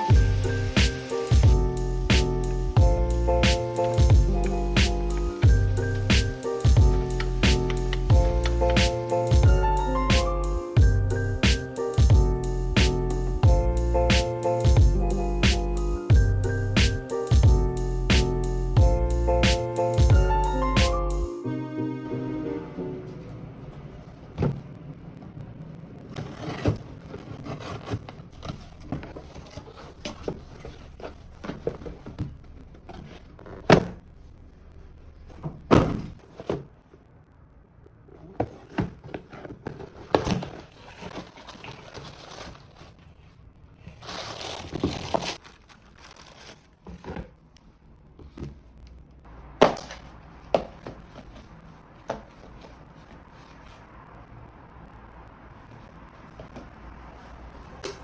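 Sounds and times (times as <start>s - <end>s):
rustling: 0.0s - 20.1s, 26.1s - 34.5s, 38.1s - 47.6s.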